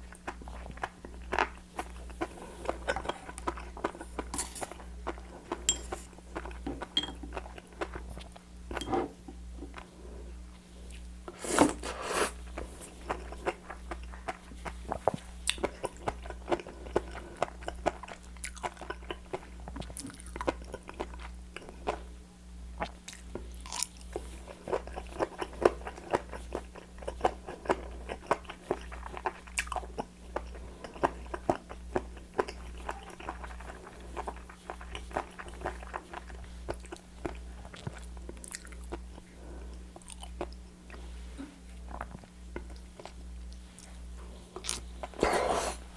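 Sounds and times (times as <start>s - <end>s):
crunchy chewing: 10.9s - 22.1s, 22.8s - 41.0s.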